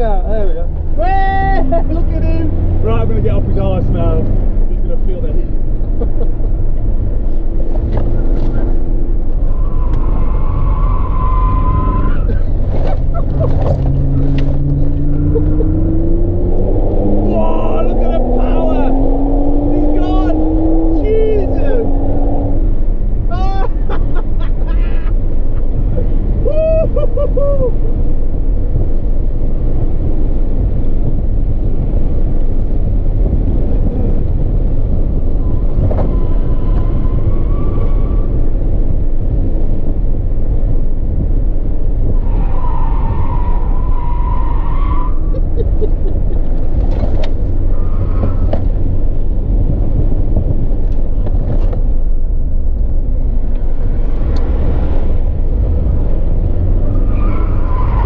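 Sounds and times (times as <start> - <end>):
car interior engine and road rumble: 0.0 - 58.0
tyres squealing: 57.0 - 58.0.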